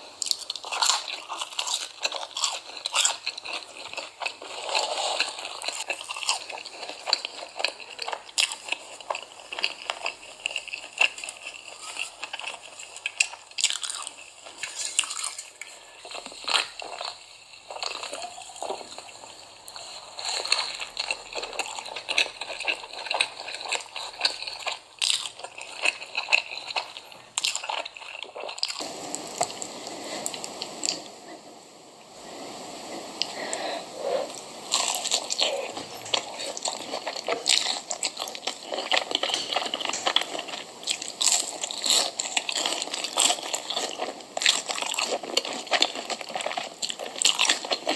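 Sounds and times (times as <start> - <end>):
wet squishy chewing: 33.2 - 47.9.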